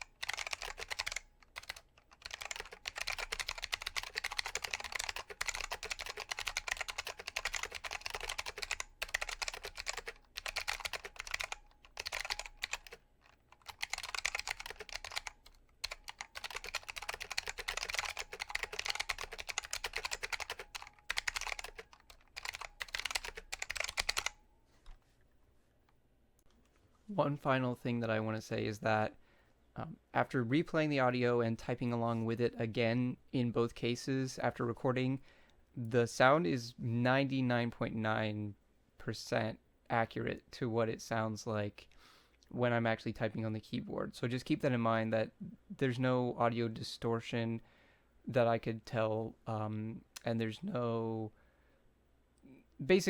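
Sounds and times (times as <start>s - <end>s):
clicky mechanical keyboard typing: 0.0s - 24.4s.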